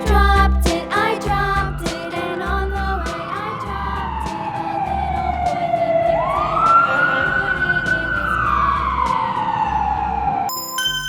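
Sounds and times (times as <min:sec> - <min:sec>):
fire engine siren wailing: 0:01.6 - 0:10.5
chiming jingle: 0:10.5 - 0:11.0.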